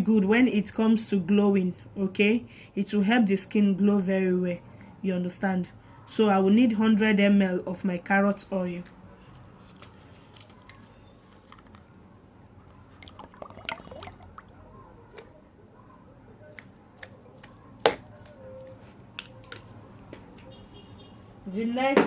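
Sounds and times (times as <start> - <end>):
oil trickling and dripping: 12.7 - 14.6.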